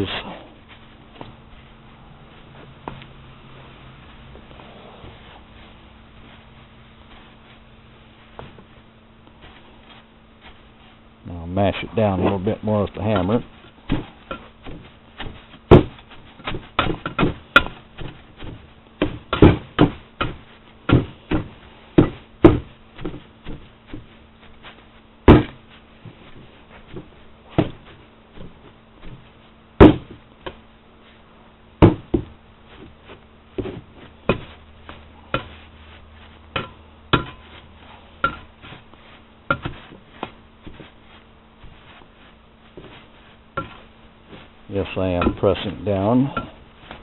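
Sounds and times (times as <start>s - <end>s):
loud thumps: 29.8s - 30.2s, 31.8s - 32.3s.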